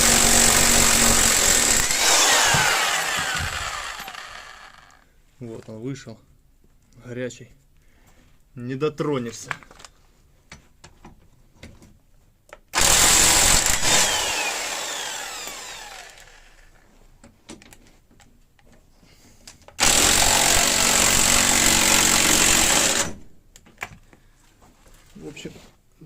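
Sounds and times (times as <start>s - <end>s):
impact wrench running: 0.0s - 5.0s, 12.8s - 16.7s, 19.8s - 23.1s.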